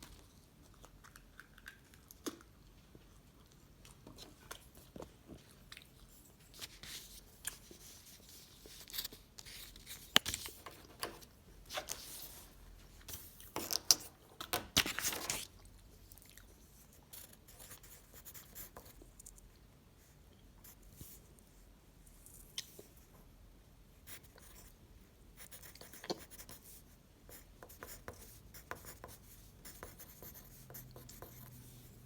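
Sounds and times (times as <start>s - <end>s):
person chewing tissue paper: 0.0s - 6.2s.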